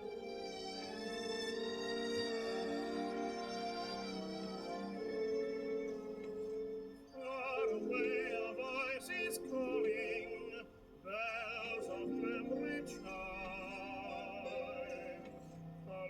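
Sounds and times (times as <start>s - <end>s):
operatic singing on vinyl record: 7.1s - 16.0s.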